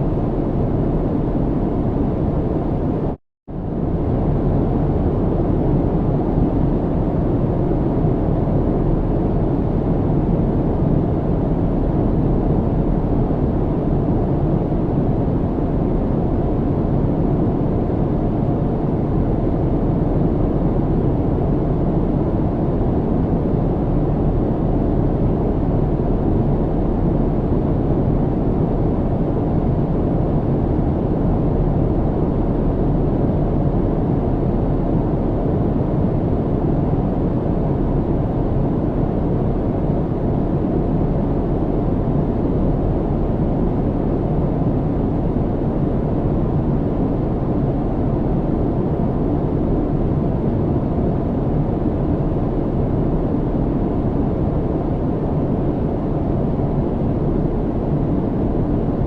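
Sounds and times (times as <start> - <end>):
airliner cabin engine rumble: 0.0 - 59.0.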